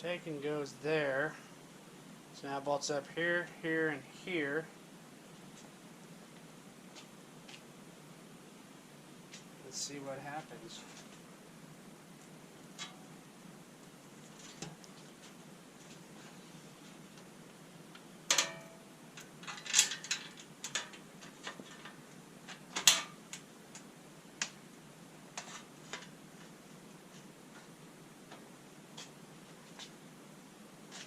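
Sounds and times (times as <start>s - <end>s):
clicks and clinks of bolts: 18.3s - 23.9s.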